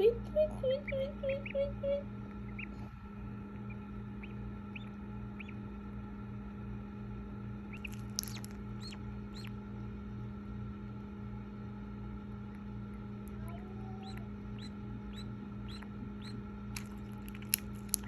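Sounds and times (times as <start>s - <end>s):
low mechanical hum: 0.0s - 18.0s
duckling peeping: 0.2s - 5.7s, 7.7s - 9.6s, 13.4s - 18.0s.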